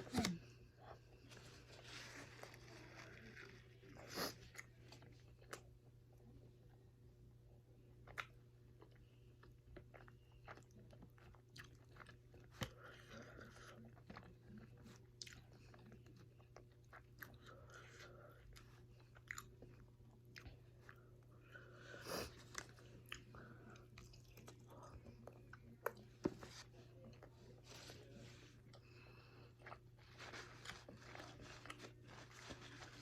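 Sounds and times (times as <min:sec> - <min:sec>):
person chewing crunchily: 0:08.0 - 0:21.2, 0:29.4 - 0:33.0.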